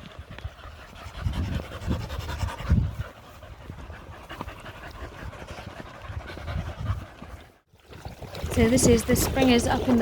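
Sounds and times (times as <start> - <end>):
dogs panting hard: 0.0 - 7.7.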